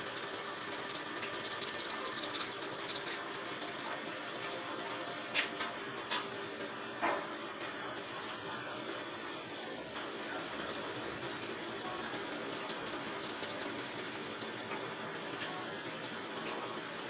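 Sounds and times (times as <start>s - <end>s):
rapid fine ticking: 0.0s - 4.5s
small motor running: 0.0s - 4.8s.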